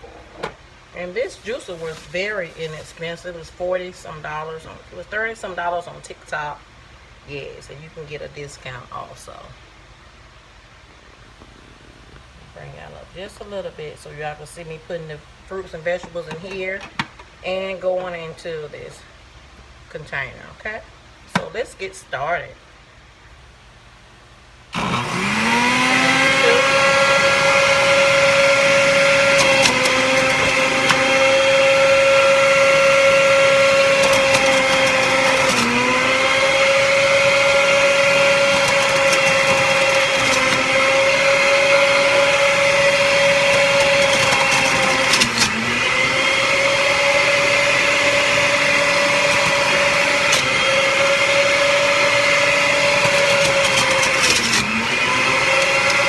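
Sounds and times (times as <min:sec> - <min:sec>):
juicer motor whining: 0:24.8 - 0:56.0.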